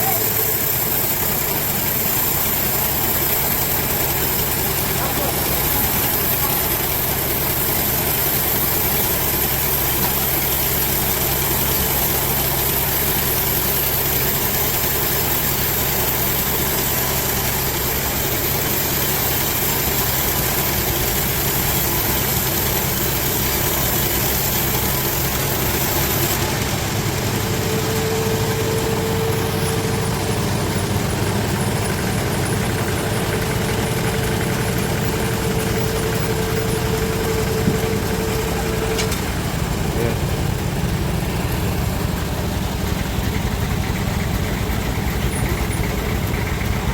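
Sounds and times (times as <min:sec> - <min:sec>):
high hiss: 0:00.0 - 0:46.9
sawmill machinery drone: 0:00.0 - 0:46.9
steady mid-pitched tone: 0:19.7 - 0:42.2.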